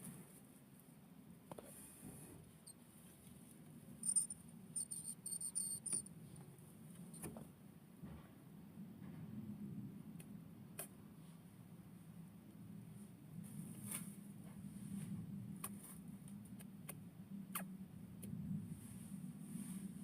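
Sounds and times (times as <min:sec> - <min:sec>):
hamster high-pitched ticks: 0:04.0 - 0:06.1.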